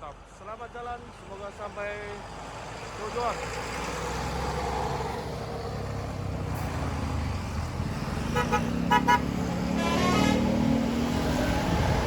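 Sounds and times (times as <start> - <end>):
bus engine running: 0.8 - 12.0
bus horn tooting: 8.3 - 10.6.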